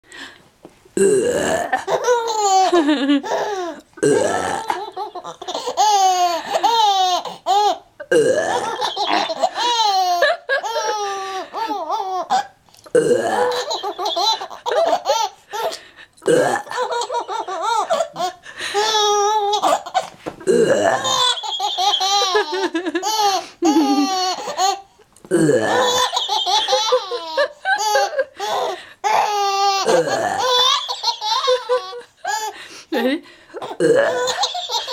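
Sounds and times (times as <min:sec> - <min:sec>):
adult burping: 0:01.0 - 0:01.9, 0:04.0 - 0:04.9, 0:08.0 - 0:08.8, 0:12.8 - 0:13.8, 0:16.2 - 0:16.8, 0:20.4 - 0:21.3, 0:25.2 - 0:26.1, 0:29.8 - 0:30.6, 0:33.6 - 0:34.4
baby laughing: 0:01.8 - 0:03.8, 0:04.6 - 0:07.8, 0:08.5 - 0:12.6, 0:13.4 - 0:15.8, 0:16.6 - 0:20.1, 0:21.0 - 0:24.9, 0:25.6 - 0:32.6, 0:33.6 - 0:34.9.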